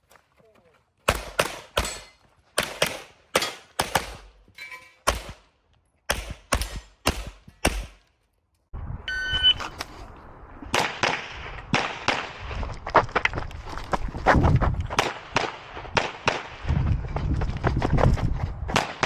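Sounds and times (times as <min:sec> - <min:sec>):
handgun shots: 0:01.1 - 0:04.4, 0:05.0 - 0:05.4, 0:06.1 - 0:08.1
short beep: 0:09.0 - 0:09.7.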